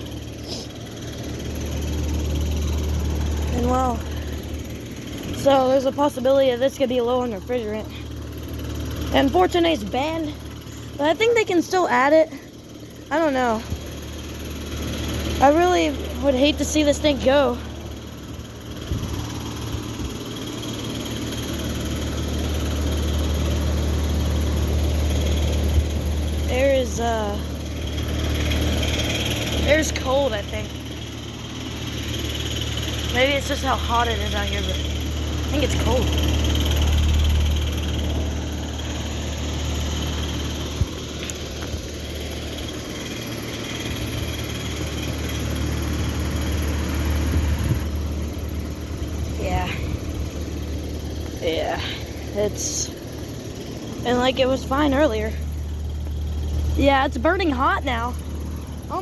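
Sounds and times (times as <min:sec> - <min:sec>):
heat pump fan hum and whoosh: 0:45.9 - 0:50.4.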